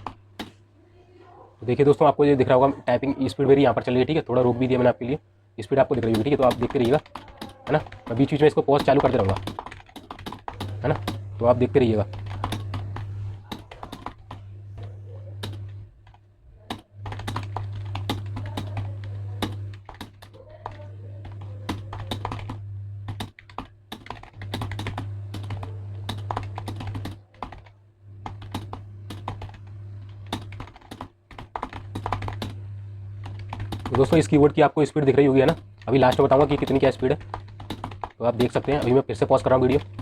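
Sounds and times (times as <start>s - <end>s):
low steady hum: 0.0s - 40.0s
keyboard typing clicks: 5.9s - 11.2s, 12.0s - 32.6s, 33.2s - 34.2s, 35.4s - 39.0s.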